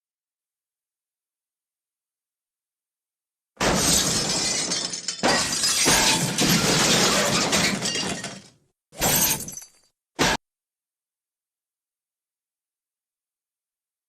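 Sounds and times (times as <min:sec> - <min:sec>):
breaking glass and debris: 0:03.6 - 0:10.4
glass shattering: 0:03.6 - 0:10.4.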